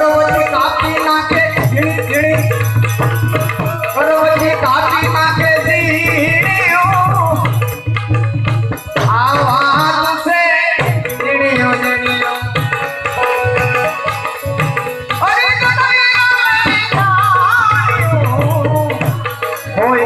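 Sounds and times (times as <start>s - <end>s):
steady percussion beat: 0.0s - 20.0s.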